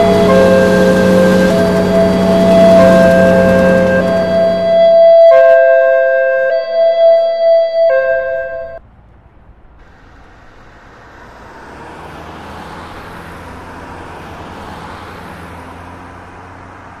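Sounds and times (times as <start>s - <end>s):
chiming tone: 0.0s - 8.8s
road vehicle passing: 0.0s - 17.0s.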